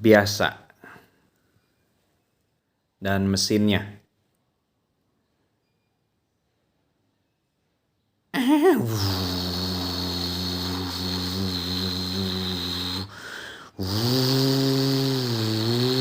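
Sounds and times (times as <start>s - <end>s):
person imitating engine idling: 8.4s - 16.0s.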